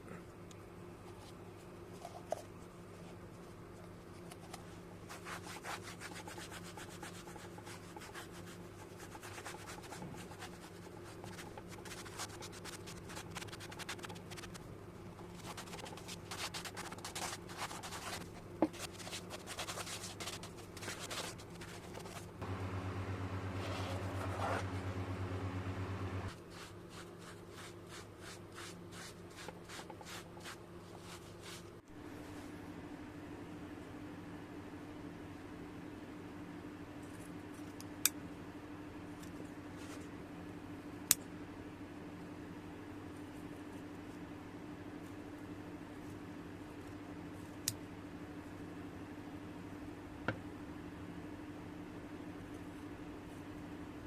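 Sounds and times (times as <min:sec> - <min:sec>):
low steady buzz: 0:00.0 - 0:54.0
hand rubbing and scratching surface: 0:04.1 - 0:25.4, 0:26.1 - 0:32.4.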